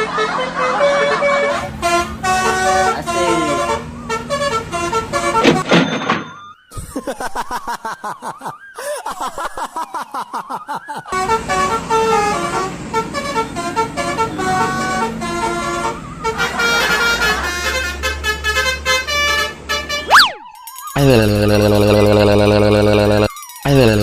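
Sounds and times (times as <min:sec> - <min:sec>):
multi-tone bus horn: 0:00.0 - 0:05.8, 0:11.1 - 0:20.2, 0:21.0 - 0:24.0.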